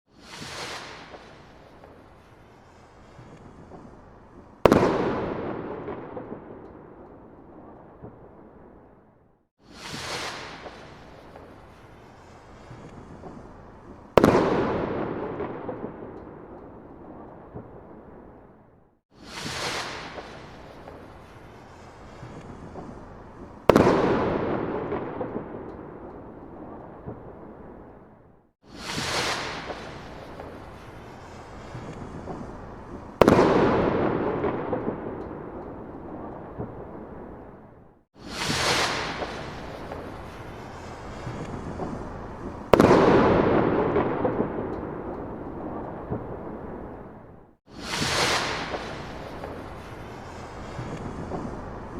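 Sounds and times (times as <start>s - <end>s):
firework rocket whoosh: 0.1s - 6.3s, 9.6s - 16.3s, 19.1s - 25.8s, 28.6s - 37.4s, 38.2s - 47.0s, 47.7s - 51.9s
firework bang: 0.1s - 6.8s, 9.6s - 16.4s, 19.2s - 27.3s, 28.6s - 51.9s
rumble with crackles: 29.0s - 33.4s, 38.5s - 43.1s, 48.0s - 51.9s.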